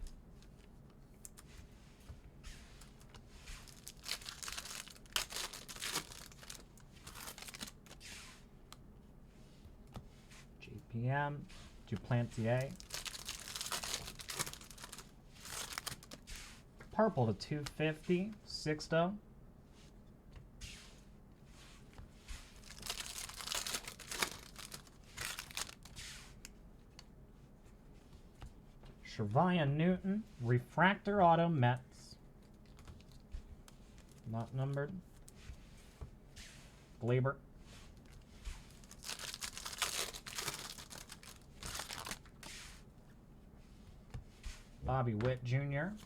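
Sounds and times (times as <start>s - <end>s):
foil wrapper crinkling and tearing: 2.8s - 8.0s, 12.0s - 16.3s, 22.6s - 26.0s, 32.6s - 35.3s, 38.0s - 42.5s.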